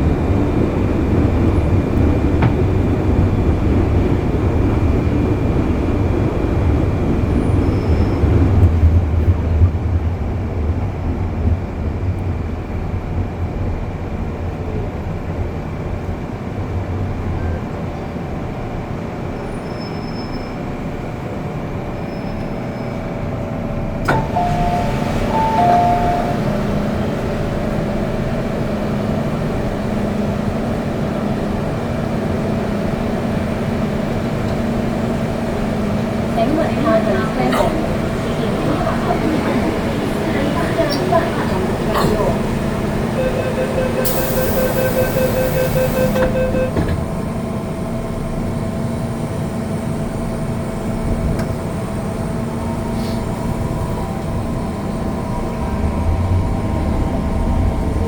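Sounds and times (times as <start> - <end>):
train running rumble: 0.0 - 58.0
two-note chime: 24.1 - 26.6.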